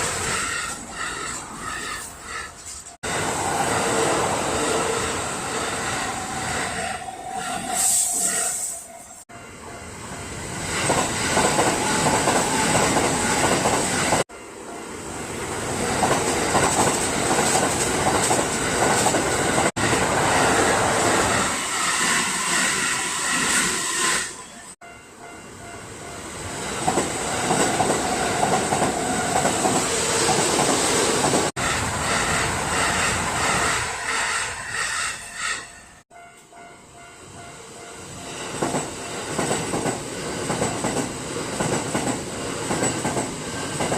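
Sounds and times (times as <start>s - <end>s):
train wheels clattering over rails: 10.6s - 14.2s, 15.9s - 20.2s, 38.4s - 43.9s
level crossing warning bell: 24.5s - 26.3s, 35.7s - 38.4s.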